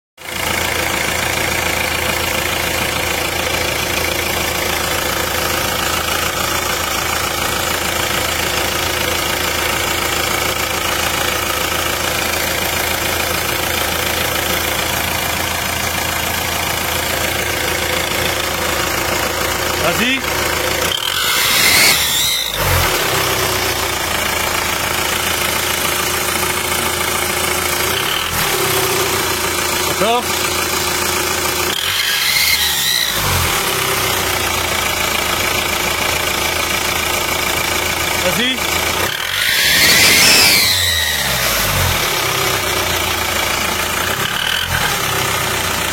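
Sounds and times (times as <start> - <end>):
engine idling: 0.2 - 45.9.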